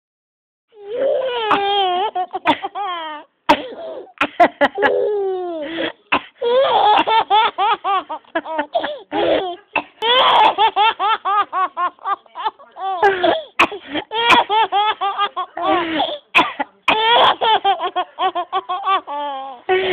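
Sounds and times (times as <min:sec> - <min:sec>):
baby giggling: 0:01.0 - 0:03.2, 0:04.7 - 0:05.8, 0:06.5 - 0:16.3
woman coughing: 0:01.4 - 0:02.8, 0:03.5 - 0:05.0, 0:05.8 - 0:07.3, 0:08.6 - 0:10.8, 0:12.1 - 0:18.8.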